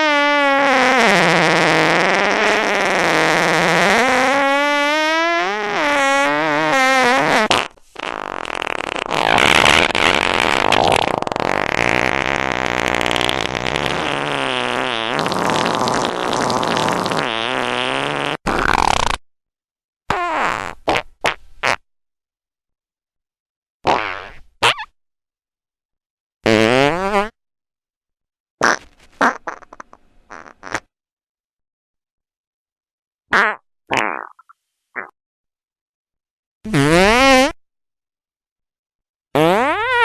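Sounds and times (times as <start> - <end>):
fart sound effects: 0.0 - 19.2, 20.1 - 21.8, 23.8 - 25.0, 26.4 - 27.4, 28.6 - 30.9, 33.3 - 35.2, 36.7 - 37.6, 39.4 - 40.0.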